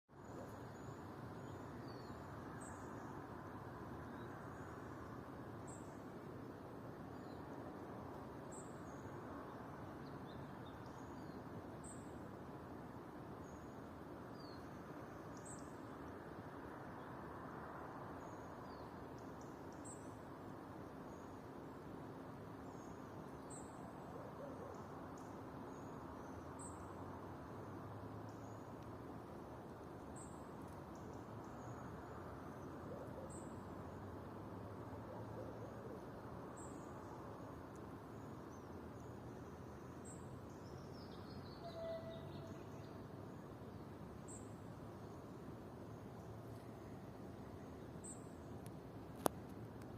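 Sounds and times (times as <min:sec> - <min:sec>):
low rushing background noise: 0:00.1 - 0:49.9
high bird chirps: 0:41.6 - 0:42.5.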